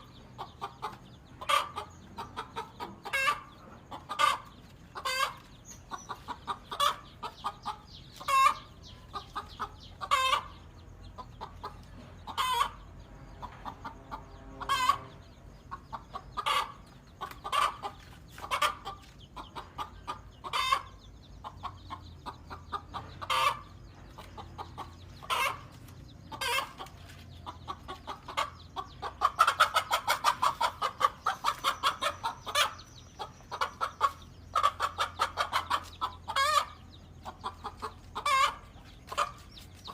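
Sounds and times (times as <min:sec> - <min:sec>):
hen clucking: 0:00.0 - 0:39.9.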